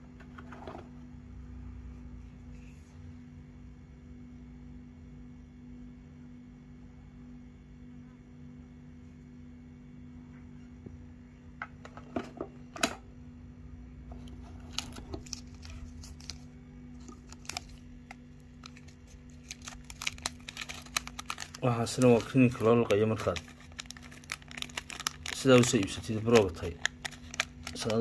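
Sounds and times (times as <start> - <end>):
low electrical hum: 0.0 - 28.0
hands handling packaging: 14.1 - 28.0.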